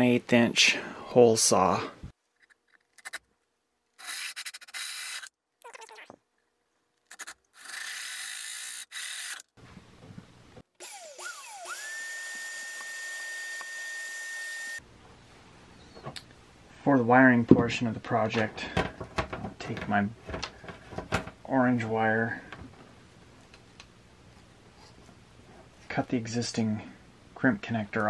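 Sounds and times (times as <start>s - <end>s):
drill motor whine: 10.8s - 14.8s.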